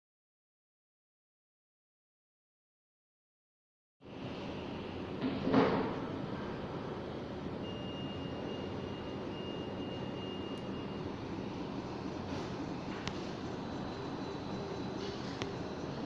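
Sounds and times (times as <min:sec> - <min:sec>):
cooling fans and stepper motors whirring: 0:04.0 - 0:16.0
thin high whine: 0:04.0 - 0:16.0.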